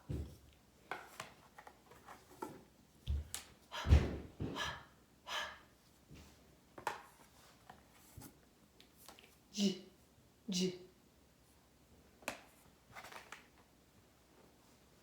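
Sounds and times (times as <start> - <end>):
puffs of breath: 3.7 - 5.7
woman saying phonetic letter sounds: 9.6 - 9.9, 10.5 - 10.9.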